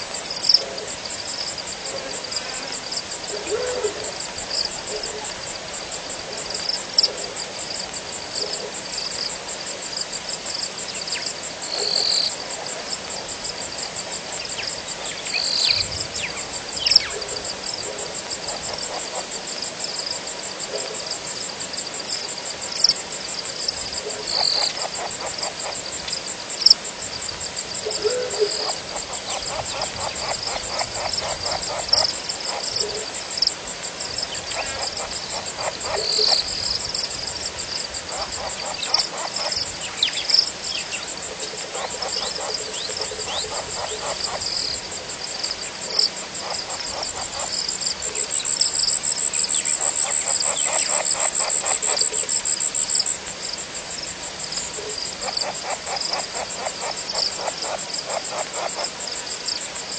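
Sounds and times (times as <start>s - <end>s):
high pulsing insect trill: 0.0s - 59.9s
rapid pulsed frog trills: 0.0s - 59.9s
short low frog calls: 27.8s - 33.5s, 34.1s - 53.1s, 54.7s - 59.3s.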